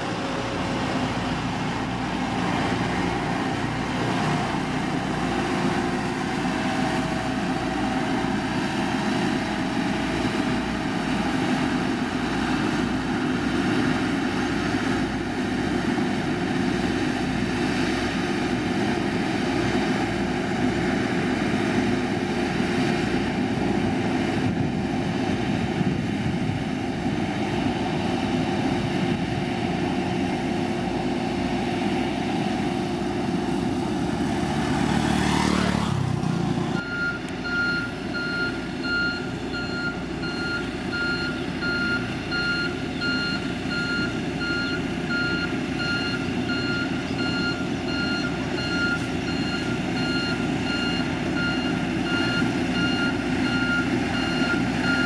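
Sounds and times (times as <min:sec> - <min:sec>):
diesel engine under load: 0:00.0 - 0:55.0
reversing alarm beeping: 0:36.8 - 0:55.0.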